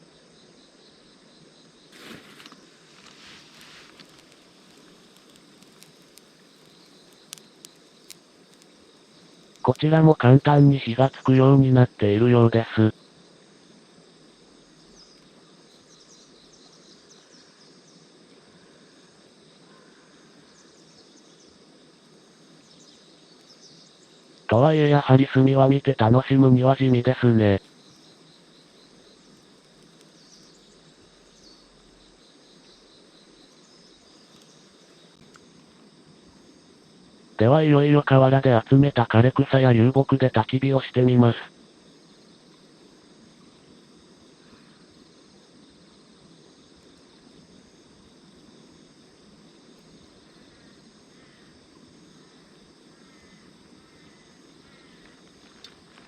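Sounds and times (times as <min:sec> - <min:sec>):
insects trilling: 0:00.0 - 0:56.0
soft chirps: 0:02.0 - 0:12.9.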